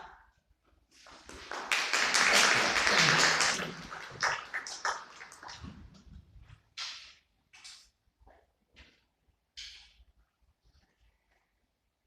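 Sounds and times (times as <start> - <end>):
audience applause: 1.1 - 5.6.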